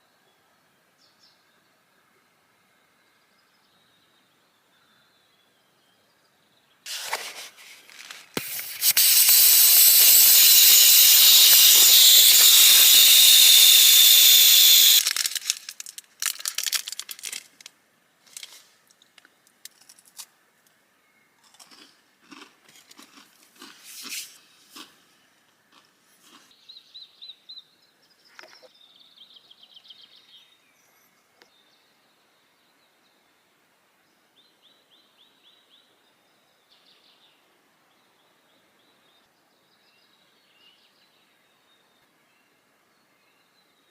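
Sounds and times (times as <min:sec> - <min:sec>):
crinkling handling noises: 0:06.9 - 0:08.8, 0:15.0 - 0:20.3
loud steady hiss: 0:06.9 - 0:15.7
bird chirps: 0:08.5 - 0:15.0.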